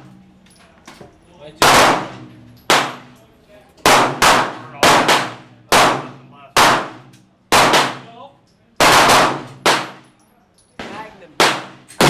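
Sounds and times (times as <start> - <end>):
rapid gunshots: 1.6 - 3.0, 3.9 - 8.1, 8.8 - 10.0, 11.4 - 12.0.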